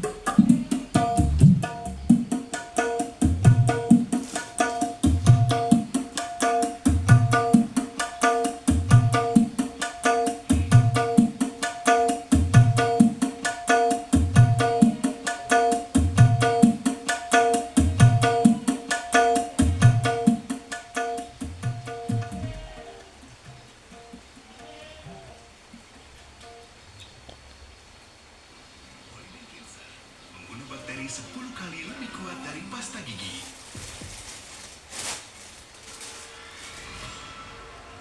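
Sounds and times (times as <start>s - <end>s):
music with hand-drum percussion: 0.0s - 24.6s.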